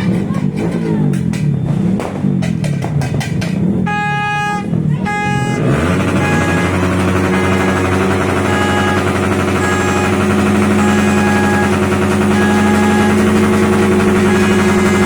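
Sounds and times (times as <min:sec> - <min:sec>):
motorcycle engine revving: 0:00.0 - 0:15.0
motorcycle horn toots: 0:03.8 - 0:15.0.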